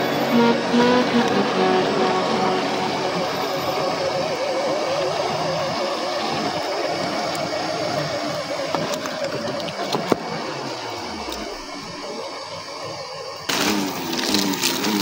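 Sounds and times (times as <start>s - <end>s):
electric motor and gears whining: 0.0s - 15.0s.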